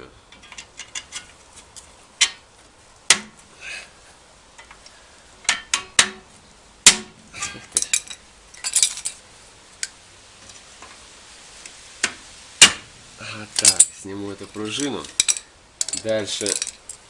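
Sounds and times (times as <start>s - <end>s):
tools clinking on metal: 7.4s - 9.2s, 13.5s - 17.0s.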